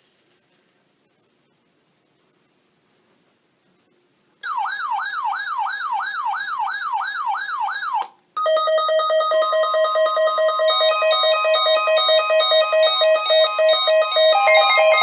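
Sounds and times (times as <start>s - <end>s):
pulsing electronic alarm: 9.4s - 15.0s
electronic siren wailing: 11.1s - 15.0s.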